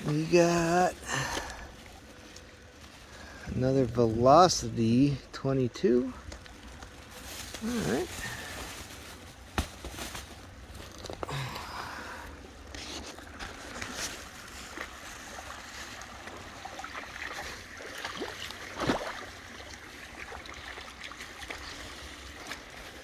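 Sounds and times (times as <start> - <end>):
stream flowing water: 0.0 - 5.3, 12.0 - 23.0
footsteps sloshing over stones: 0.0 - 5.5, 6.2 - 23.0
splash: 13.6 - 23.0.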